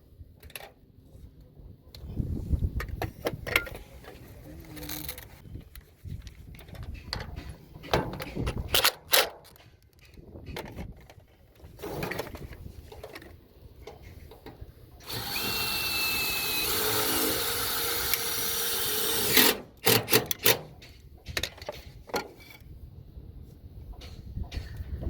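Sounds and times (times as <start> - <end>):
power drill running: 15.0 - 19.6.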